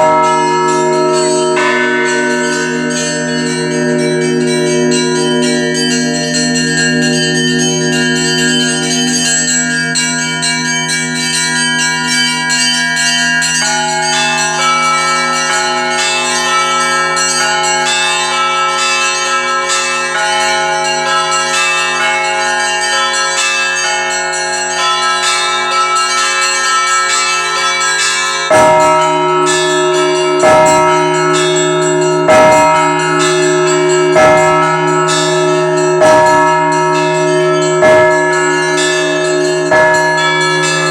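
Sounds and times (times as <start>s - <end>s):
deep heavy bell strokes: 0.0s - 22.6s, 28.4s - 40.9s
church bells pealing: 0.0s - 40.9s.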